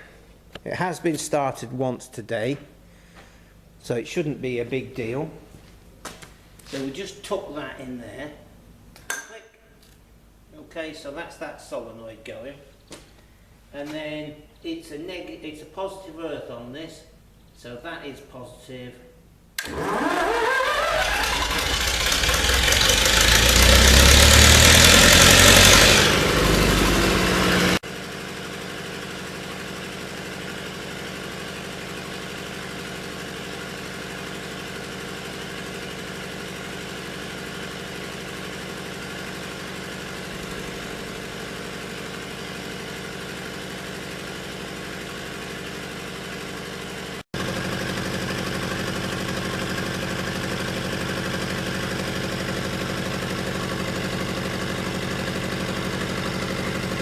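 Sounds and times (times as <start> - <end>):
diesel generator engine running: 19.6 - 57.0.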